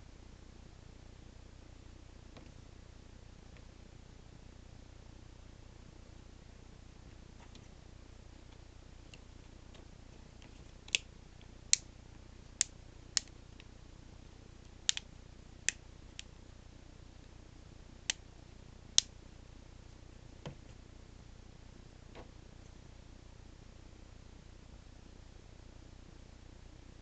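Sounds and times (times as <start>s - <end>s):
small sharp plastic clicks: 14.8s - 15.1s.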